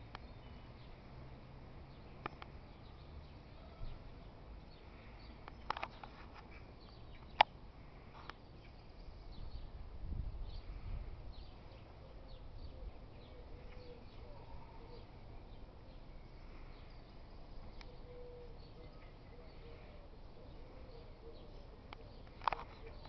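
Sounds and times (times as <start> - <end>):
faint bird chirps: 10.6 - 23.0.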